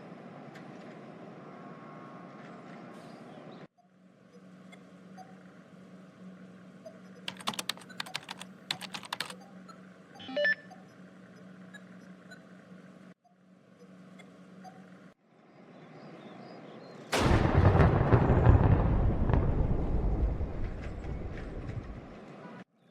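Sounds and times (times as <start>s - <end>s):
keyboard key clicks: 7.3s - 9.4s.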